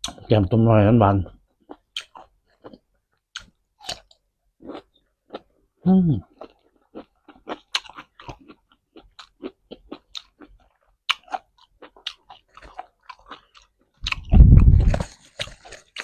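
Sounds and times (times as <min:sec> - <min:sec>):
chewing food: 0:01.2 - 0:16.0.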